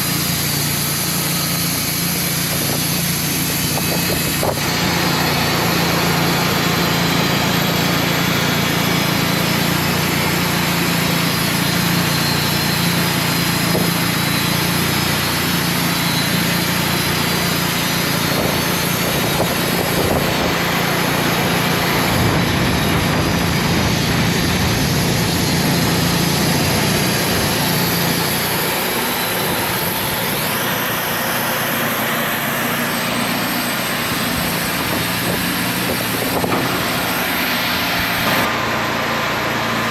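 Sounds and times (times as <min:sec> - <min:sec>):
sawmill engine running: 0:00.0 - 0:39.9
wind noise: 0:01.7 - 0:06.7, 0:17.8 - 0:28.3, 0:34.0 - 0:37.1.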